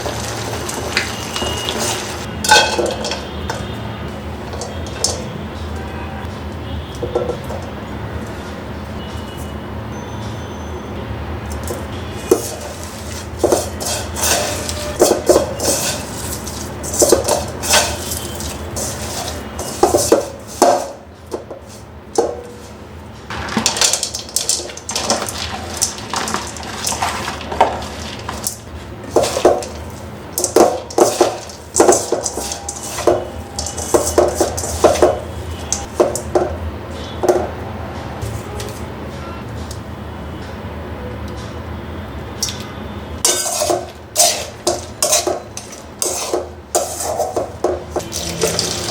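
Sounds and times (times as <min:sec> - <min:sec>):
dishes and utensils clinking: 0:00.8 - 0:03.7, 0:11.6 - 0:22.7, 0:23.3 - 0:36.6, 0:43.2 - 0:48.9.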